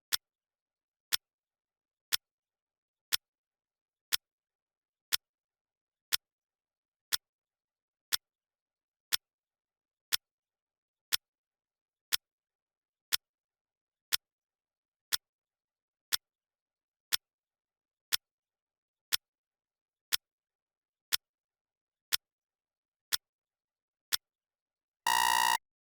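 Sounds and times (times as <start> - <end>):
clock ticking: 25.1 - 25.6
rapid alarm beeps: 25.1 - 25.6.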